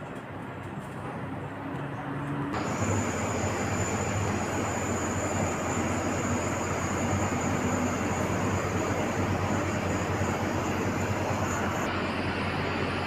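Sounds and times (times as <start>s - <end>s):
air conditioner unit humming: 2.6s - 13.0s
high-pitched whine: 2.6s - 13.0s.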